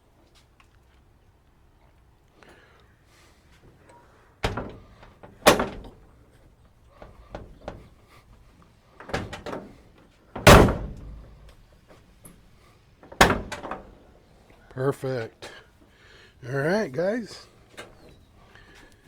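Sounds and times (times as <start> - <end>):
door latch clicks: 4.4 - 6.0, 9.0 - 9.7, 10.4 - 11.6, 13.0 - 14.0
truck door slamming: 4.4 - 6.1, 7.0 - 7.9, 9.0 - 9.8, 10.4 - 11.6, 13.0 - 14.0.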